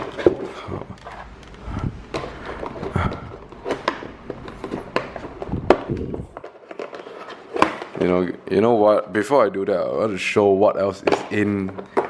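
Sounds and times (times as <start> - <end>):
cardboard packaging handled: 0.0 - 8.1.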